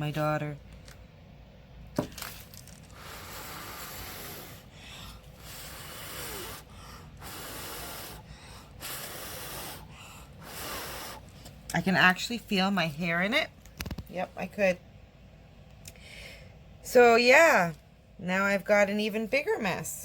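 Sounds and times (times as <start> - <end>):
person blowing hard by mouth: 2.9 - 11.3.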